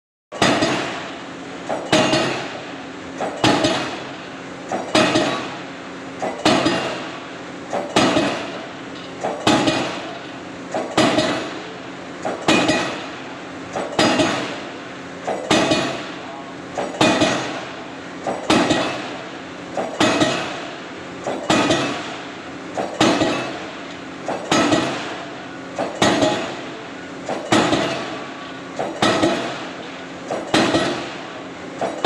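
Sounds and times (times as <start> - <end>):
pile hammer blows: 0.4 - 2.6, 9.2 - 19.2, 19.8 - 22.2, 22.8 - 32.0.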